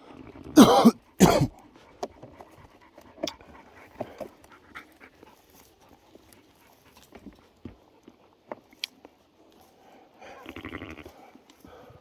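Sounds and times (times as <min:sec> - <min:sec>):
dog panting: 0:01.8 - 0:07.5.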